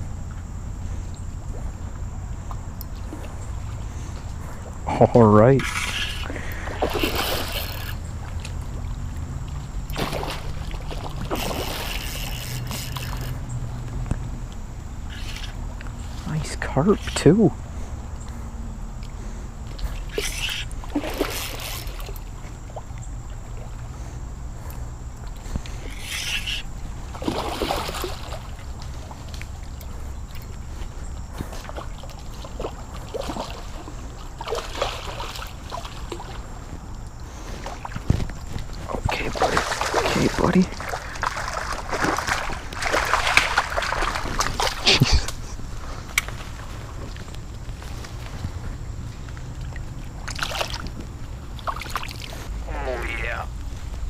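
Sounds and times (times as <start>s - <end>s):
steady low rumble: 0.0s - 7.0s, 52.3s - 54.0s
water splashing in a creek: 1.7s - 18.2s, 18.9s - 54.0s
fish thrashing in water: 5.5s - 14.2s, 14.9s - 17.2s, 19.7s - 24.2s, 25.2s - 36.8s, 37.4s - 48.2s, 48.8s - 52.6s.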